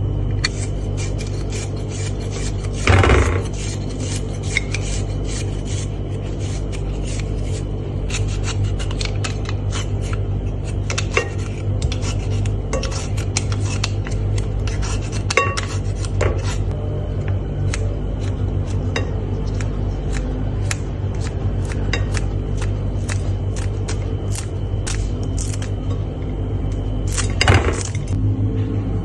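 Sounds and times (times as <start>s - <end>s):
kitchen utensil scraping food: 0.4s - 16.7s.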